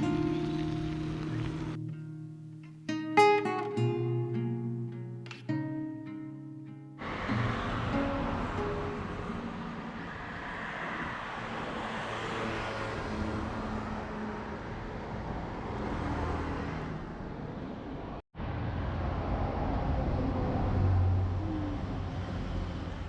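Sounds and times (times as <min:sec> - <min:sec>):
road traffic noise: 0:00.0 - 0:01.9, 0:07.0 - 0:23.0.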